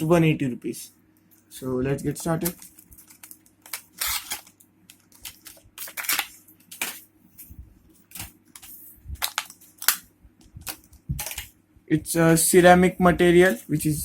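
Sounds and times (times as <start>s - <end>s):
packaging rustling: 2.0s - 11.5s.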